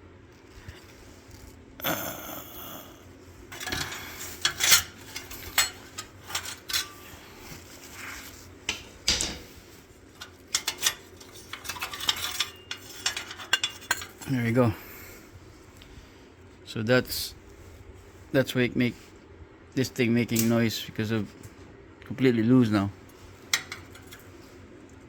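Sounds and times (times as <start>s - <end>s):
loose metal shield clanking: 3.5s - 7.1s, 8.7s - 9.6s, 10.2s - 14.4s.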